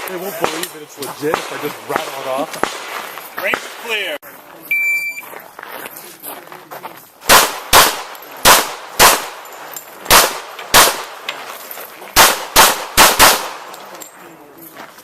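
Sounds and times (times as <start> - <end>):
pistol shots: 1.2 - 3.8, 7.2 - 11.3, 12.2 - 13.8.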